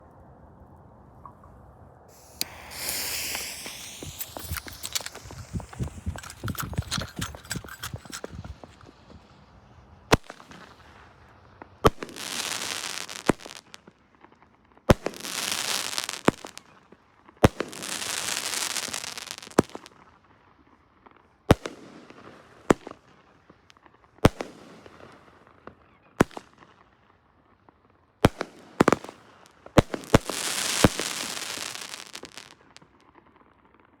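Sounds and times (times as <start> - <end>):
firework bangs: 2.1 - 9.2
firework crackle: 2.1 - 10.8, 11.9 - 13.8, 14.9 - 16.6, 17.5 - 19.9, 28.4 - 33.0.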